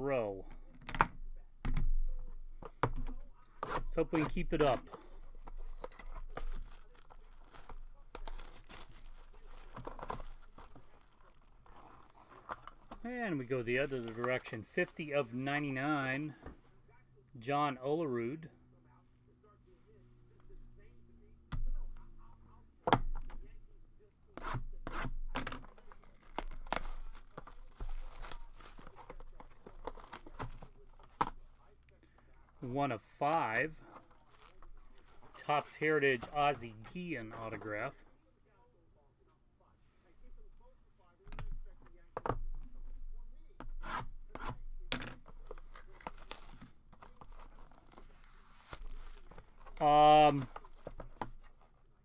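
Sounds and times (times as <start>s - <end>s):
packaging rustling: 2.6s - 15.2s, 25.4s - 31.8s, 33.6s - 37.9s, 44.9s - 51.9s
card packaging clicks and taps: 43.9s - 51.4s.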